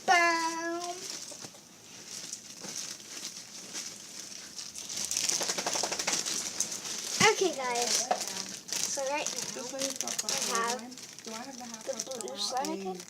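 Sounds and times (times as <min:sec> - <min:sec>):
slime squeezed crackling: 0:04.0 - 0:13.0.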